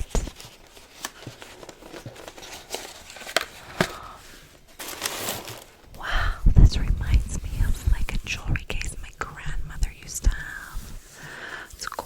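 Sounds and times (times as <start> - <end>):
light packaging rustle: 0.0 - 5.9.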